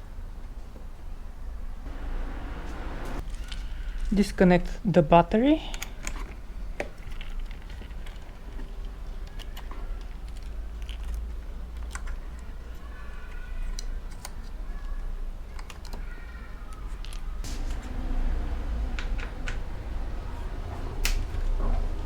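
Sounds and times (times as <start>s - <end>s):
steady low hum: 1.6s - 3.2s.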